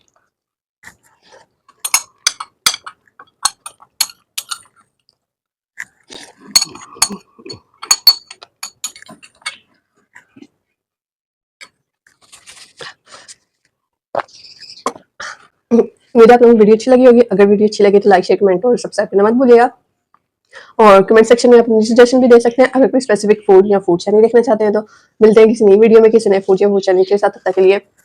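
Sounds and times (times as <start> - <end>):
utensil clinking against bowl: 1.8 - 4.8, 6.5 - 9.6.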